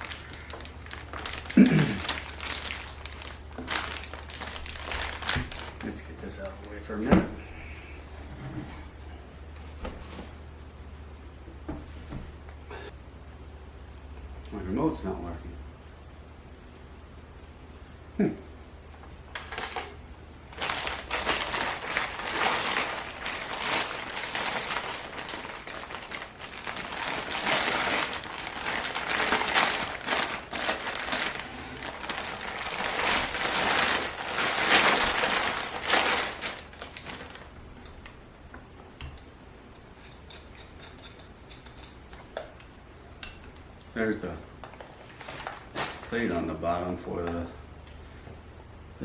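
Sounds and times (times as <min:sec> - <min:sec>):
plastic packaging crinkling: 0:00.0 - 0:07.0, 0:19.3 - 0:38.2, 0:44.8 - 0:46.3.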